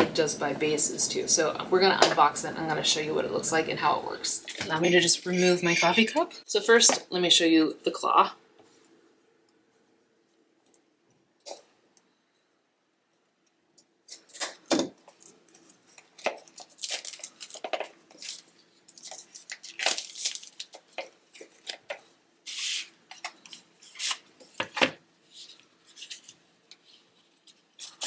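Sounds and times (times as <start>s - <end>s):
packaging rustling and tearing: 14.1s - 28.0s.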